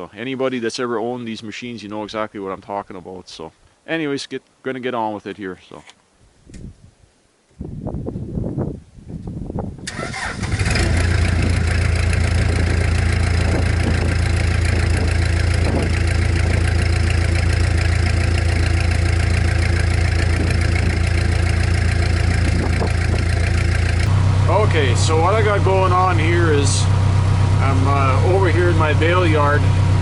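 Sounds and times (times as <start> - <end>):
diesel engine running: 9.9 - 30.0.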